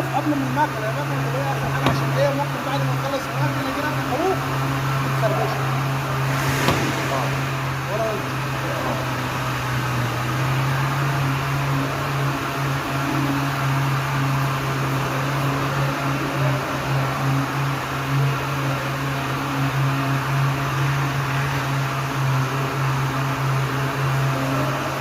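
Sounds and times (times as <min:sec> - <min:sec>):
motor humming: 0:00.0 - 0:25.0.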